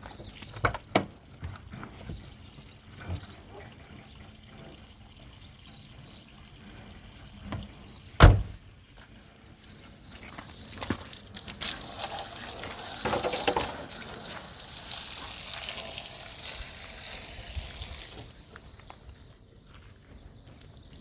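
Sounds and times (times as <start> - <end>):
water trickling: 0.0 - 21.0
loud thump: 8.2 - 8.6.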